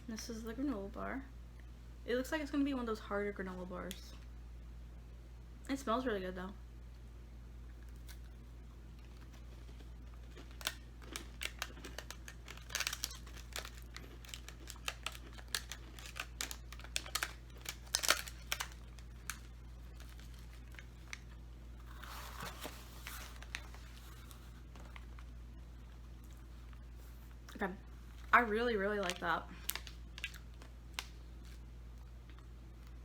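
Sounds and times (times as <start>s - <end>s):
granola bar being chewed: 7.7s - 25.3s, 29.6s - 33.0s
plastic wrapper crinkling: 9.0s - 25.3s, 28.9s - 31.6s.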